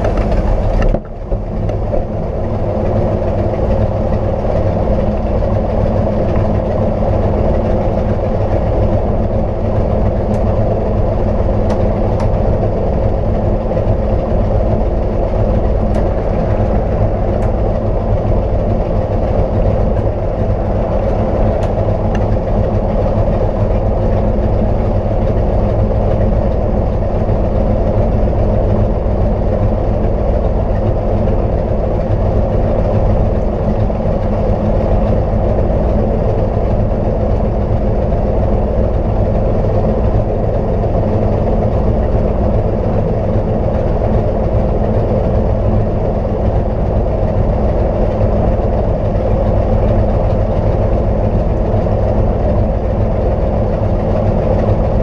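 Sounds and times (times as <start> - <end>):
light aircraft piston engine drone: 0.0 - 55.0.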